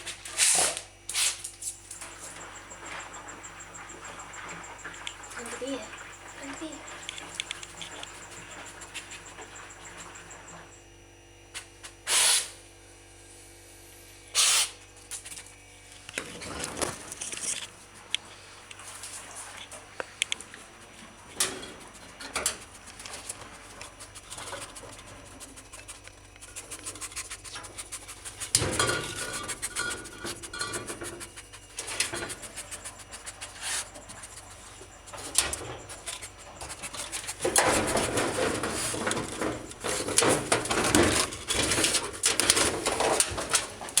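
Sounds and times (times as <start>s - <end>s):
knocks and clatters: 21.2s - 32.8s, 34.0s - 44.0s
dog rummaging through laundry: 27.3s - 44.0s.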